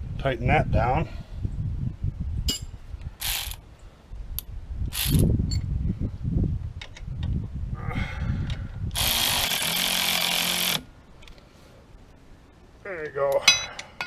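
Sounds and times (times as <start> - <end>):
ratchet wrench clicking: 3.2 - 3.6.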